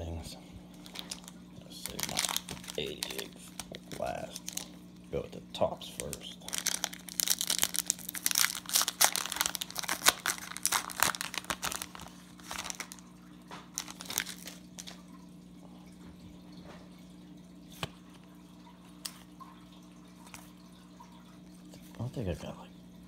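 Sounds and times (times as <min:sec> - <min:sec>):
faint steady hum: 0:00.0 - 0:23.0
plastic wrappers crinkling and tearing: 0:00.8 - 0:04.8, 0:06.0 - 0:15.2.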